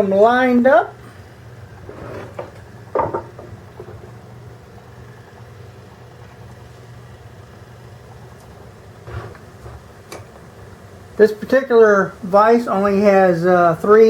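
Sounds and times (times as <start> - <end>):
bench vise clunk: 1.9 - 4.2.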